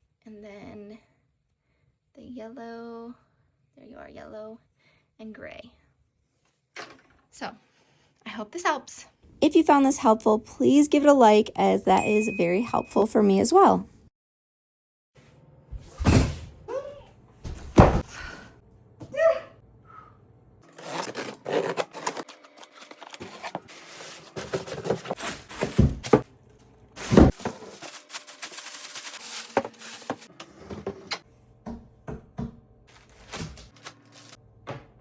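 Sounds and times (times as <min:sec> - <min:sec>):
loud thunks: 0:15.8 - 0:16.6, 0:17.4 - 0:18.1
objects being handled: 0:20.7 - 0:26.3, 0:27.0 - 0:31.2.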